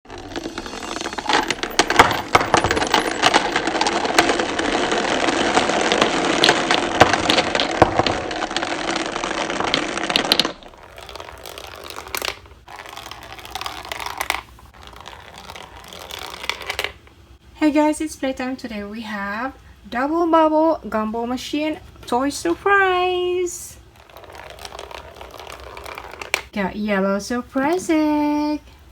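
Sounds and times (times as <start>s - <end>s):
plastic capsules clattering: 0.1s - 17.1s, 23.8s - 26.5s.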